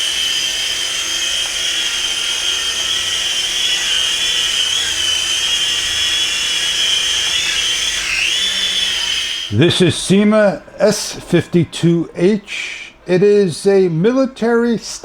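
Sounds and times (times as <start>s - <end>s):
toy helicopter motors whining: 0.0s - 9.6s.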